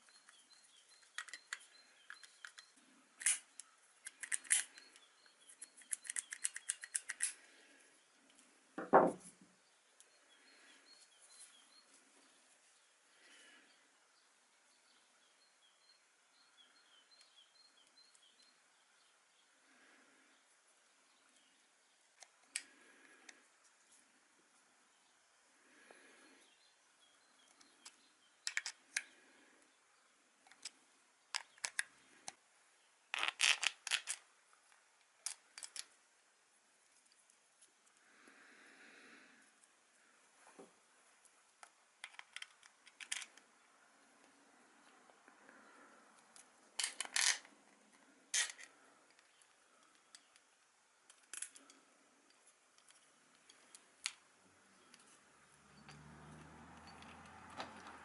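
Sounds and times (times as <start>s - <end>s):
small hard parts clattering: 0.0s - 7.4s, 27.4s - 29.2s, 33.1s - 34.3s, 35.2s - 36.0s, 41.6s - 43.5s, 46.2s - 47.5s, 48.3s - 55.2s
faint bird chirps: 0.0s - 8.2s, 9.5s - 21.9s
dull thump: 8.8s - 9.3s.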